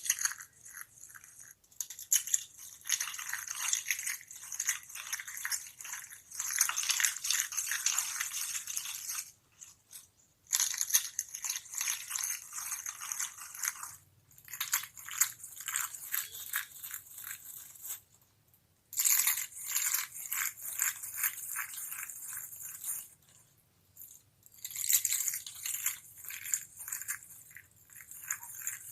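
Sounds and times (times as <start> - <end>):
crisp crunching and crackling: 0.0 - 18.1, 24.0 - 28.9.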